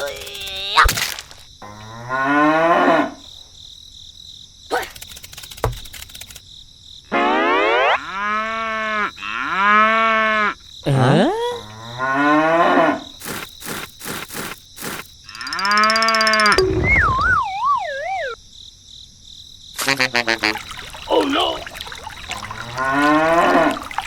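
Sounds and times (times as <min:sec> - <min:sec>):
sharp clicks: 0:04.8 - 0:06.5
wavering up-and-down tone: 0:07.1 - 0:08.2, 0:15.3 - 0:18.4
long animal calls: 0:20.1 - 0:24.0.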